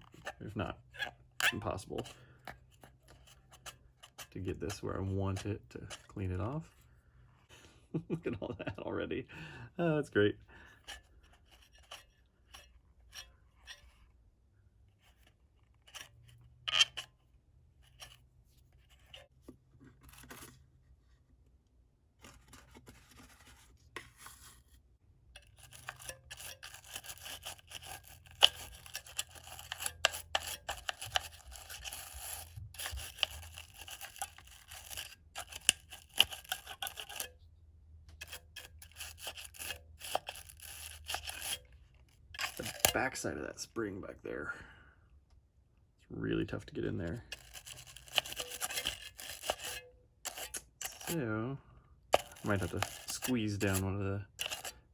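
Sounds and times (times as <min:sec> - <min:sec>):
toothbrush scrubbing metal: 0:00.0 - 0:06.3, 0:25.4 - 0:37.4, 0:38.2 - 0:43.2, 0:47.2 - 0:51.2, 0:52.1 - 0:54.9
scratches and taps: 0:25.4 - 0:37.3, 0:38.1 - 0:43.0, 0:47.3 - 0:51.2, 0:52.1 - 0:53.8, 0:54.4 - 0:54.8.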